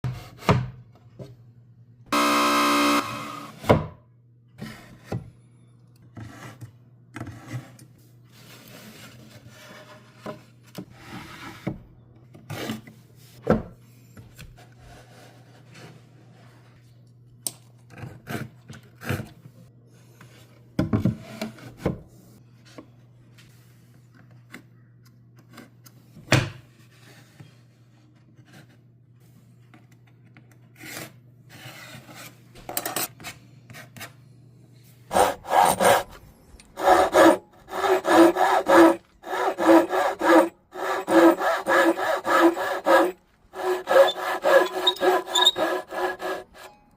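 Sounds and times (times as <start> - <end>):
loud buzz: 2.1 - 3.5
rasping and rubbing wood: 35.1 - 46.7.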